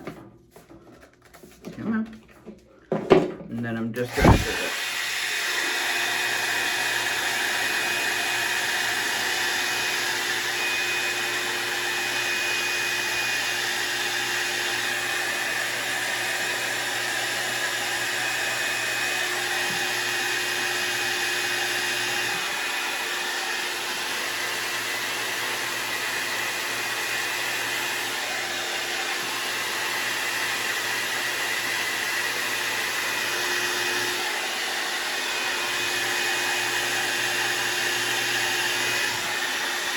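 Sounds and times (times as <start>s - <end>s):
hair dryer blowing: 4.0s - 39.9s.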